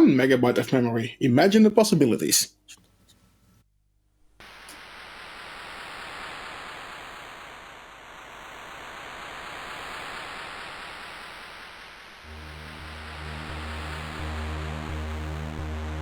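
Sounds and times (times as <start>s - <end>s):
electronic noise hiss: 4.4s - 16.0s.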